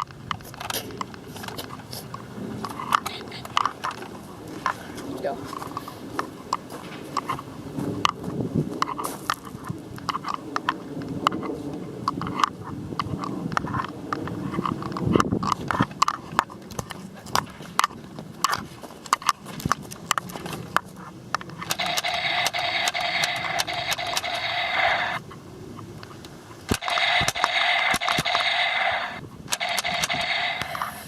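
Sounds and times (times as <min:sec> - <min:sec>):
steady buzzing hiss: 0:21.2 - 0:31.0.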